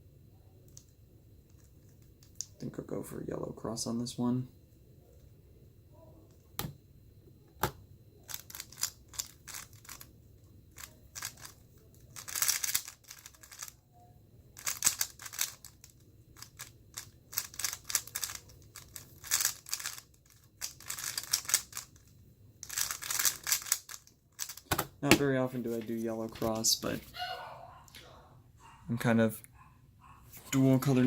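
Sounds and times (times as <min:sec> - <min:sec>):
speedcube plastic clacking: 0:08.3 - 0:10.1, 0:10.8 - 0:13.8, 0:14.6 - 0:24.8.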